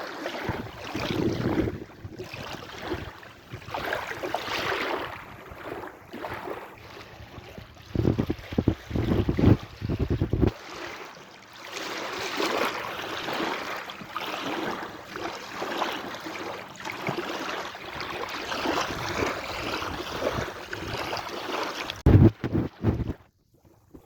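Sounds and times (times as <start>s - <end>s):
sea waves breaking: 0.0s - 23.2s
wind buffeting microphone: 0.5s - 5.9s, 6.9s - 10.6s, 17.9s - 21.2s, 22.0s - 24.0s.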